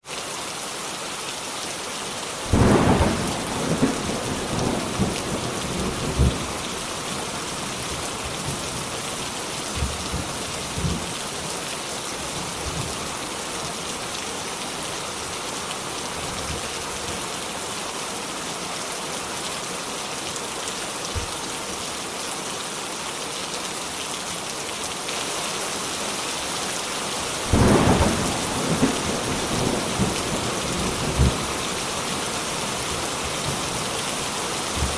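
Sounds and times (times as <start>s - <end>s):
heavy rain hissing: 0.2s - 18.6s, 23.6s - 34.9s
thunderclaps and rumbles: 2.5s - 9.0s, 9.7s - 11.1s, 27.4s - 33.9s, 34.7s - 34.9s.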